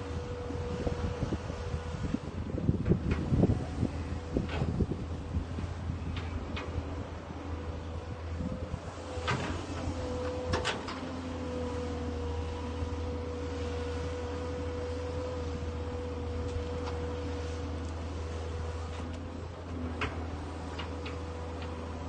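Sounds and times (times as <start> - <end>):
excavator engine hum: 0.0 - 22.0.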